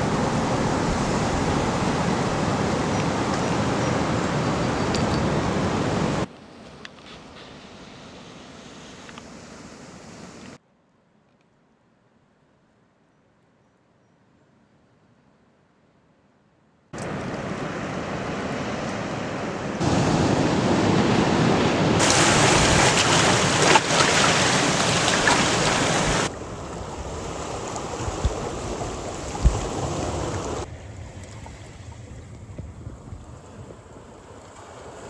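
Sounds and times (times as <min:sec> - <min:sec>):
surf washing on a beach: 0:00.0 - 0:06.3, 0:17.0 - 0:32.5
wind on microphone: 0:20.0 - 0:34.5.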